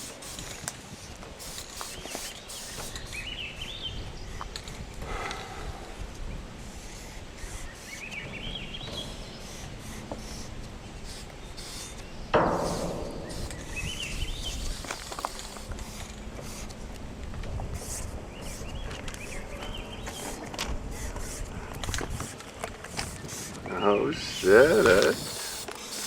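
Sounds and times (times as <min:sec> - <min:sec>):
bird chirping trills: 0:07.0 - 0:15.3.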